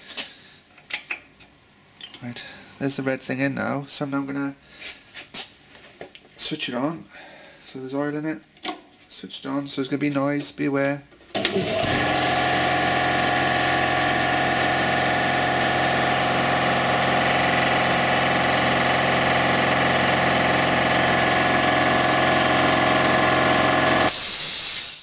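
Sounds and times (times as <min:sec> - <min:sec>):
air compressor running: 0:11.4 - 0:25.0.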